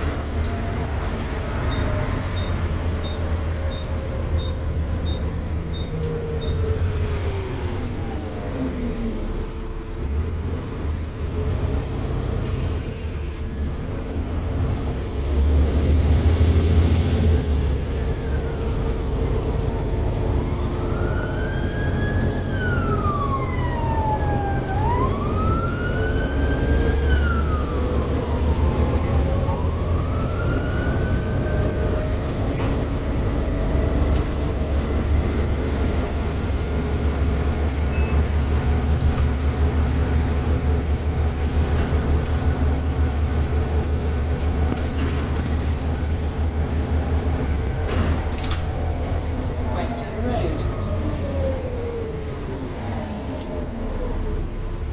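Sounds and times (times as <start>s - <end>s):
bus engine droning: 0.0s - 54.9s
emergency siren wailing: 17.1s - 41.4s, 46.9s - 54.8s.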